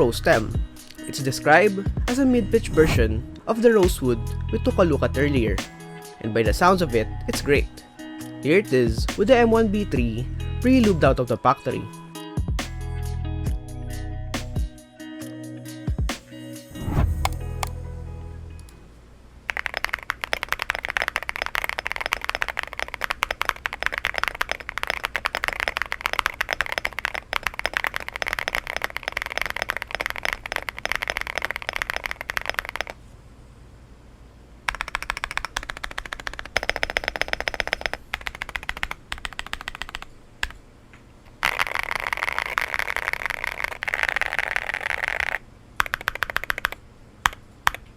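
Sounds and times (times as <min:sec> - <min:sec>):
mechanical keyboard key clacks: 0:19.5 - 0:33.0, 0:34.7 - 0:40.6, 0:41.4 - 0:47.9.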